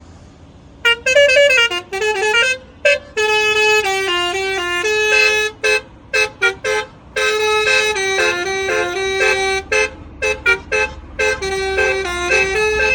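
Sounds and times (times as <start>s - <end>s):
musical vehicle horn playing tunes: 0.8s - 12.9s.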